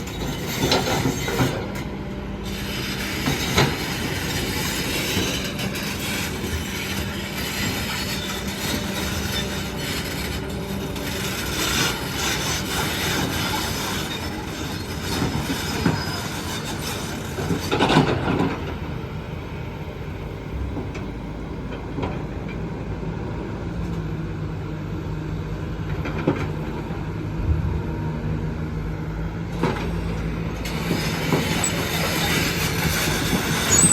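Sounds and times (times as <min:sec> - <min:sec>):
excavator diesel engine running: 0:00.0 - 0:33.9
squealing metal: 0:04.7 - 0:17.1, 0:30.7 - 0:33.9.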